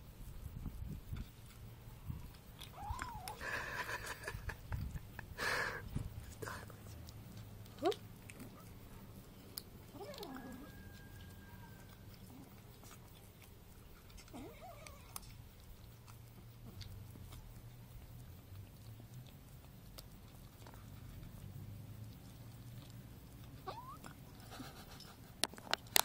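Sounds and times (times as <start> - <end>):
kitten chewing food: 0.3 - 26.0
kitten squeaky vocal noise: 23.6 - 24.1.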